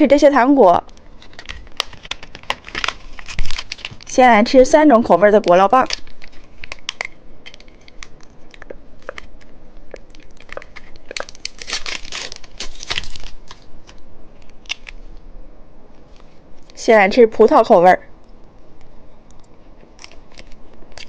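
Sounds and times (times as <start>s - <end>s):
plastic packaging crinkling: 1.0s - 4.2s, 5.3s - 9.3s, 10.1s - 15.0s.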